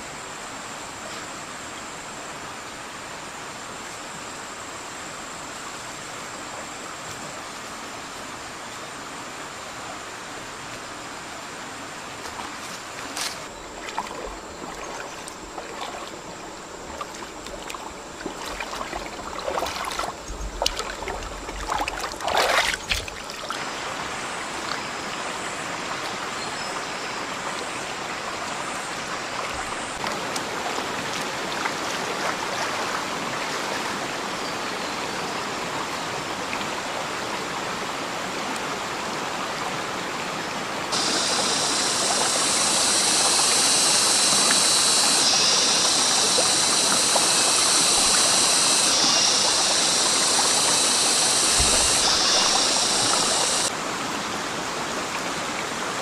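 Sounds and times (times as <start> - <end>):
stream water running: 0.0 - 56.0
water splashes and knocks: 12.2 - 23.7, 51.6 - 53.8
bright hiss: 40.9 - 53.7.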